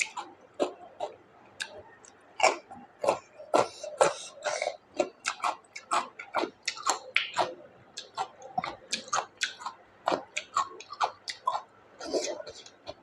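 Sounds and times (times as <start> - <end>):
person chewing food: 0.0 - 13.0.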